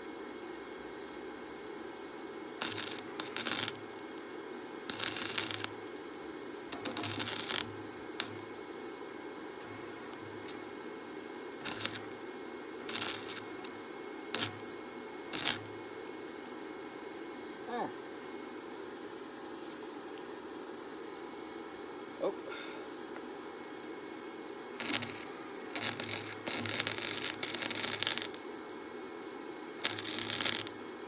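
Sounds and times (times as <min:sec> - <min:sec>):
steady hum: 0:00.0 - 0:19.3, 0:19.9 - 0:31.0
welding arc crackle and buzz: 0:02.6 - 0:04.3, 0:04.9 - 0:08.8, 0:09.6 - 0:10.8, 0:11.6 - 0:16.6, 0:24.8 - 0:28.8, 0:29.8 - 0:31.0.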